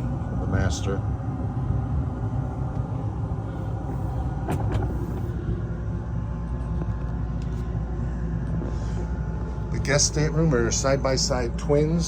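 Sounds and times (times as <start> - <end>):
air conditioning blowing: 0.0 - 12.0.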